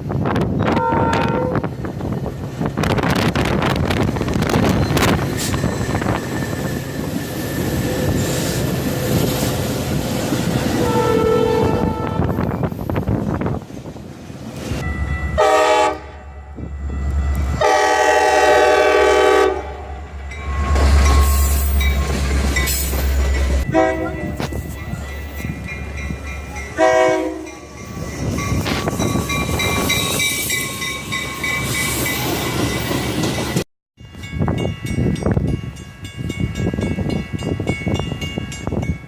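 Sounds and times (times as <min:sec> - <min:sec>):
moving train rumbling and clattering: 0:00.0 - 0:39.0
train horn blasts: 0:00.6 - 0:01.7, 0:10.8 - 0:12.6, 0:15.3 - 0:21.7, 0:23.6 - 0:24.7, 0:26.8 - 0:27.8.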